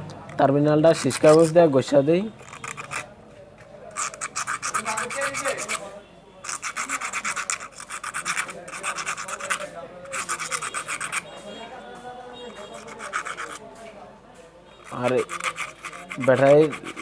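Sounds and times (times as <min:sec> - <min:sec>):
sandpaper rubbing on metal: 0:00.9 - 0:01.6, 0:02.4 - 0:03.0, 0:03.9 - 0:05.9, 0:06.5 - 0:11.3, 0:12.5 - 0:13.6, 0:14.8 - 0:17.0.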